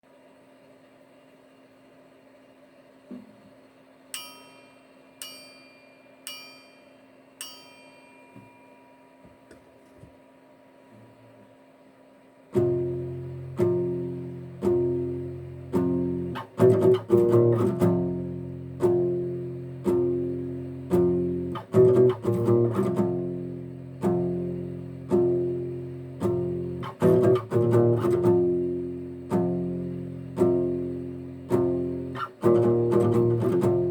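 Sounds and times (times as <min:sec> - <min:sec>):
faint steady hum: 0:00.0 - 0:33.9
acoustic guitar chords ringing: 0:04.1 - 0:09.8, 0:12.5 - 0:33.9
bell-like ringing notes: 0:04.2 - 0:09.5.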